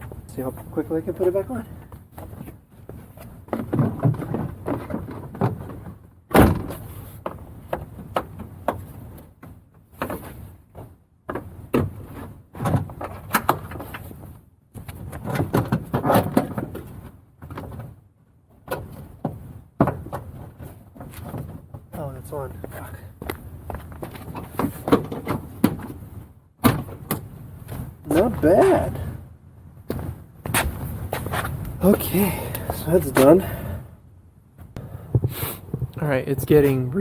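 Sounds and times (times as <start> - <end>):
bumper cover knocking and clicking: 18.6 - 21.9, 24.0 - 26.0.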